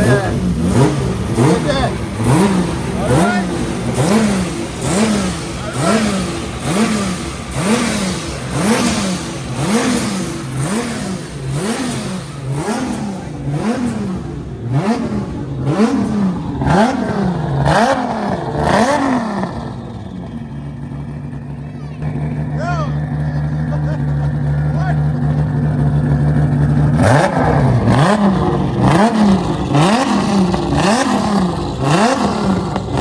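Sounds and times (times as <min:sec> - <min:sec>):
car engine revving in blips: 0:00.0 - 0:33.0.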